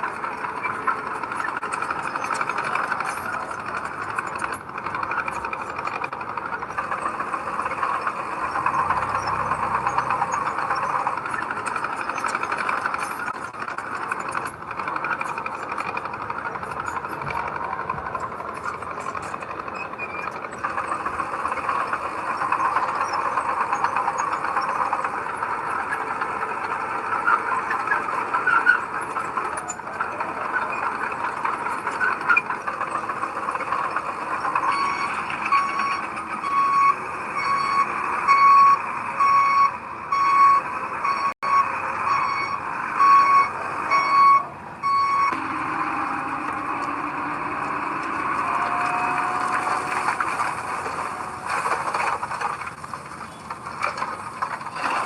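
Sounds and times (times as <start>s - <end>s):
heavy earthmoving machinery: 0.0s - 55.0s
reversing alarm beeping: 33.3s - 51.8s.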